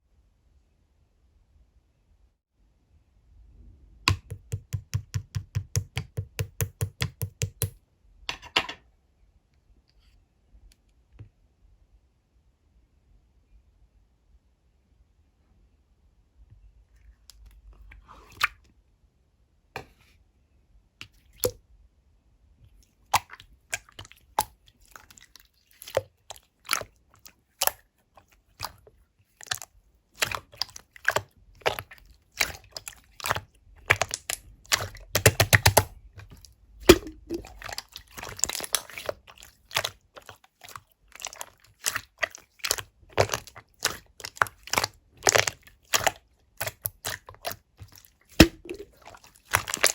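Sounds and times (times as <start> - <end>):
slime popping clicks: 36.9 - 37.5.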